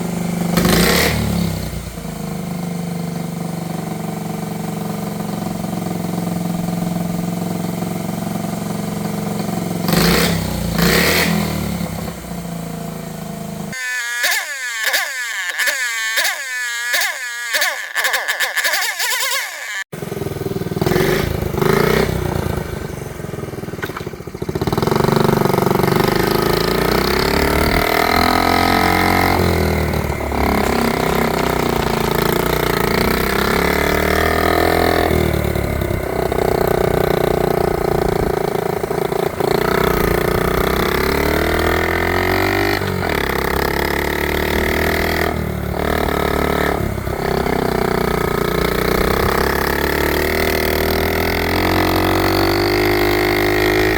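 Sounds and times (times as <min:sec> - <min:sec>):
minibike engine running: 0:13.4 - 0:53.9.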